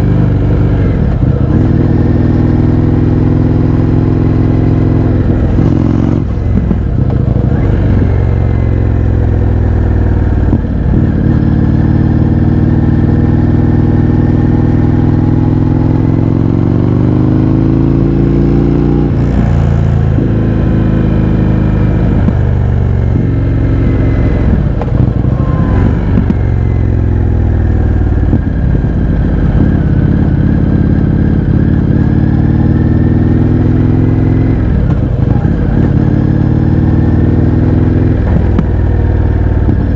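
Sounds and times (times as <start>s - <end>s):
loud motorcycle engine accelerating: 0.0s - 39.9s.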